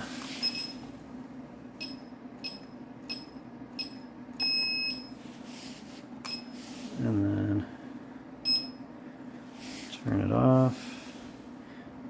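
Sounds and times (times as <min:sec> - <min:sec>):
long beep: 0:01.8 - 0:05.1.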